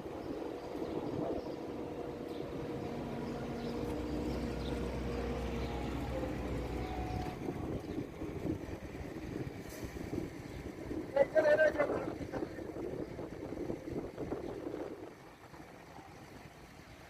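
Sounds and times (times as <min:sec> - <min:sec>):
deep low drone: 0:00.0 - 0:11.1
heavy machine engine running: 0:00.0 - 0:17.0.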